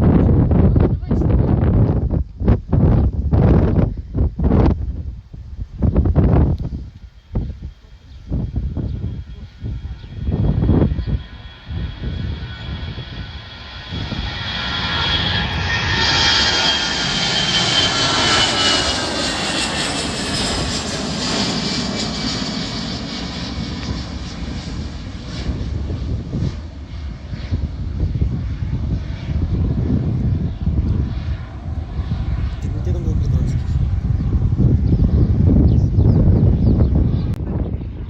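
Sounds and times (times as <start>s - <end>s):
jet airliner engine whine: 0.0s - 38.0s
low rumble: 0.0s - 38.0s.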